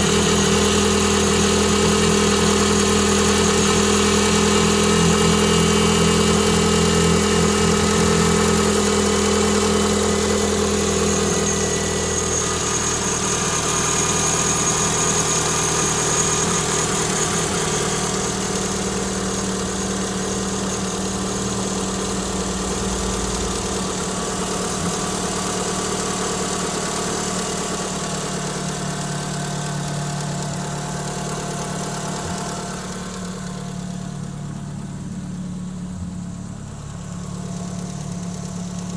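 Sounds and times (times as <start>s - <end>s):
car engine idling: 0.0s - 38.9s
thin high whine: 16.4s - 26.8s.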